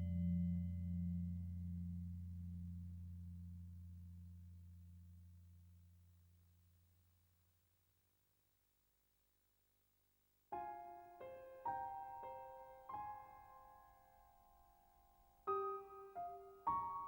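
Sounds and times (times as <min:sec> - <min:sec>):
slow solo piano: 0:10.6 - 0:17.0.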